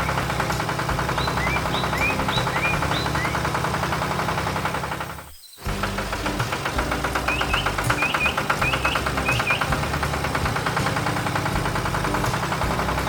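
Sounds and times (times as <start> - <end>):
tractor engine knocking: 0.0 - 13.0
short double chirps: 1.1 - 3.5, 7.1 - 9.8.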